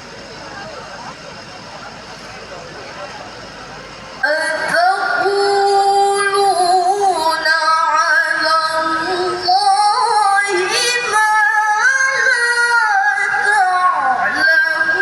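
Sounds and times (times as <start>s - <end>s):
woman chanting: 4.2s - 15.0s.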